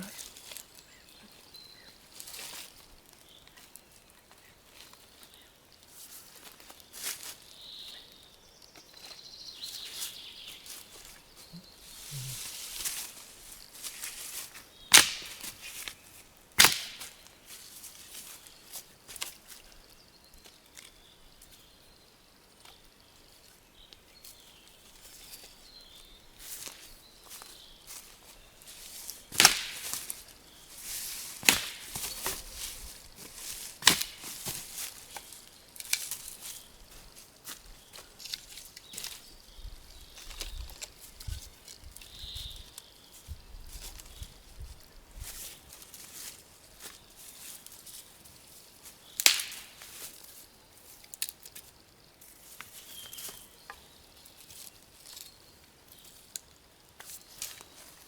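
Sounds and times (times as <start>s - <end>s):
dry sticks cracking: 13.8s - 16.0s, 16.6s - 17.4s, 26.5s - 39.3s, 49.2s - 50.1s, 51.0s - 51.7s
small snaps and rustling: 14.9s - 16.0s, 16.6s - 17.3s, 29.0s - 30.3s, 31.3s - 32.8s, 33.4s - 36.6s, 38.0s - 39.3s, 49.2s - 50.3s, 50.9s - 51.7s.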